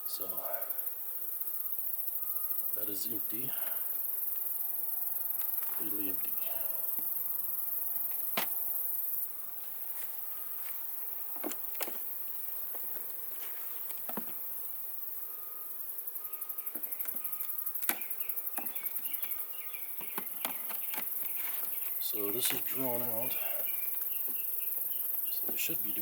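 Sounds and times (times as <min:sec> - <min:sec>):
high-pitched insect chirping: 0:00.0 - 0:26.0
hive frames clicking and knocking: 0:11.3 - 0:12.1, 0:13.8 - 0:14.5, 0:16.6 - 0:26.0.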